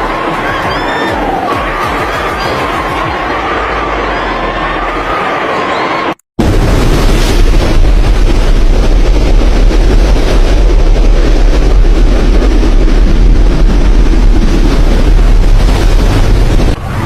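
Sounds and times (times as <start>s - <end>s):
wind buffeting microphone: 6.4s - 17.0s.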